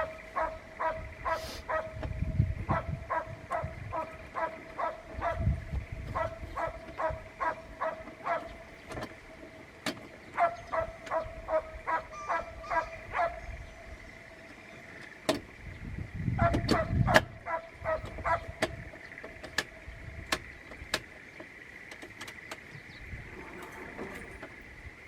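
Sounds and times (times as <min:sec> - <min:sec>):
dog barking: 0:00.0 - 0:02.0, 0:02.7 - 0:08.6, 0:10.4 - 0:13.5, 0:16.4 - 0:18.6
sharp clicks: 0:18.0 - 0:22.7.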